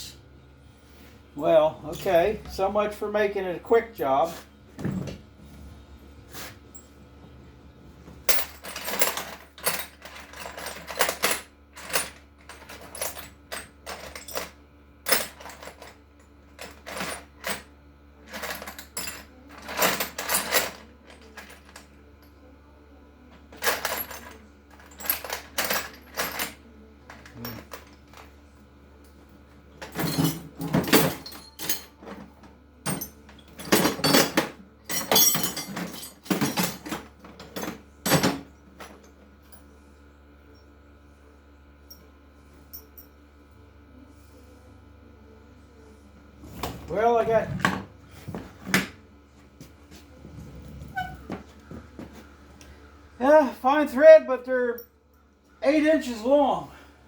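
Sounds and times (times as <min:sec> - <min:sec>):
metal hardware clinking and rattling: 0:01.4 - 0:04.2, 0:08.2 - 0:16.0, 0:16.6 - 0:22.0, 0:23.5 - 0:28.3, 0:29.8 - 0:39.6.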